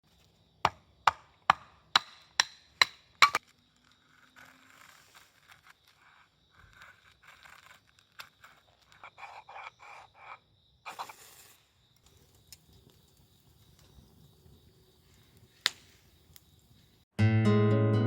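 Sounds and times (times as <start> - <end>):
faint scraping and rustling: 3.4 - 17.0.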